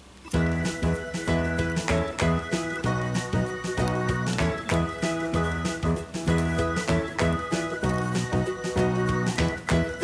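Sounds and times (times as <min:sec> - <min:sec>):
instrumental music with beat: 0:00.4 - 0:10.0.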